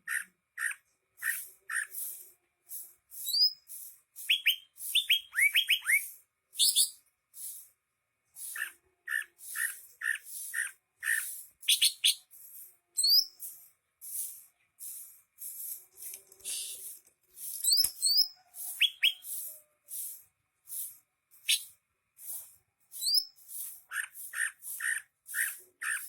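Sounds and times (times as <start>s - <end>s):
bird singing: 3.2s - 7.0s, 13.0s - 13.6s, 17.5s - 19.5s, 21.4s - 21.8s, 22.9s - 26.0s.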